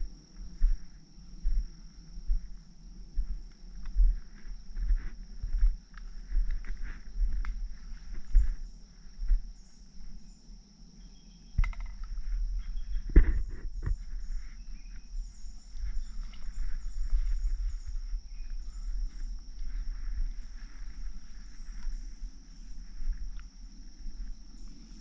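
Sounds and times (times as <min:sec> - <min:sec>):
high insect drone: 0:00.0 - 0:25.0
faint bird chirps: 0:08.1 - 0:22.9.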